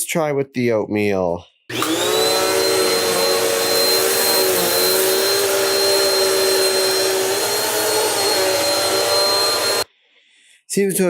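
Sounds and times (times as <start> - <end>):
upright vacuum running: 1.7 - 9.9.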